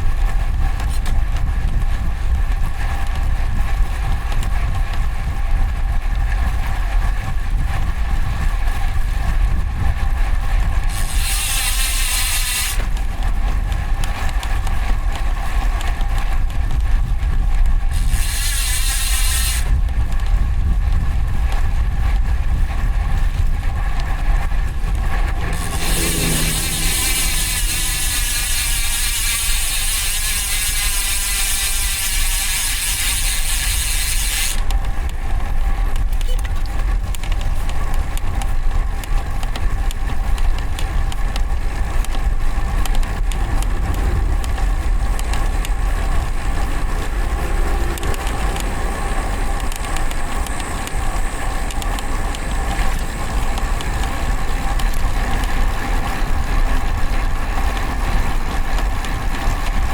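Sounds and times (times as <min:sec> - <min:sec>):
bicycle freewheel ratcheting: 0:00.0 - 0:36.2, 0:36.8 - 0:59.9
wind rumble on microphone: 0:00.0 - 0:59.9.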